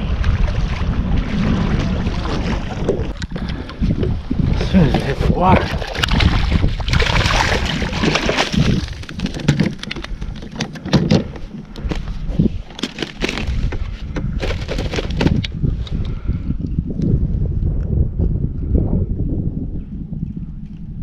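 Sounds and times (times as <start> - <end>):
wind buffeting microphone: 0.0 - 21.0
clicks and knocks: 8.2 - 11.5.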